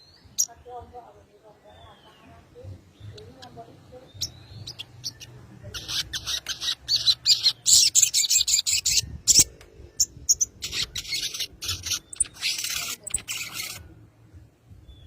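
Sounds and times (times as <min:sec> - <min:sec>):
bird buzzy chattering calls: 0:04.2 - 0:13.9.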